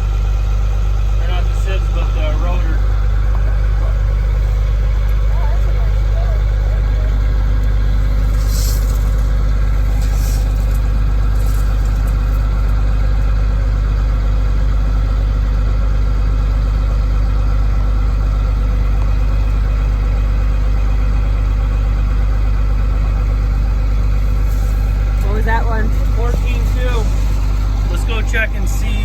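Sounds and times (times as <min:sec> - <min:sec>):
diesel engine running: 0:00.0 - 0:29.0.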